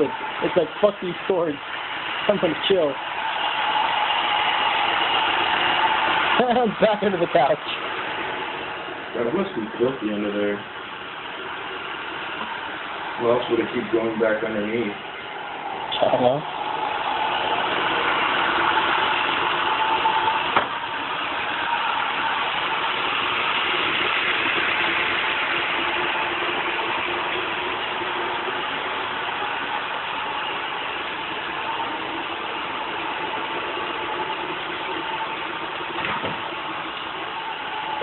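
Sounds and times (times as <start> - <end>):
knock: 36.0 - 36.4.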